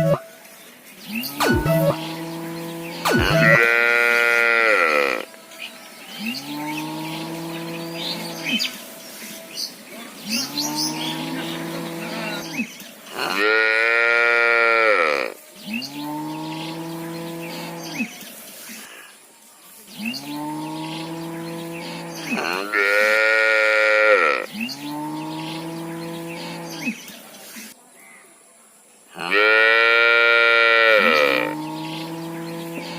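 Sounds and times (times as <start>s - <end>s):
cattle mooing: 1.7s - 5.3s, 10.3s - 12.6s, 13.2s - 15.4s, 20.4s - 27.0s, 29.2s - 32.9s.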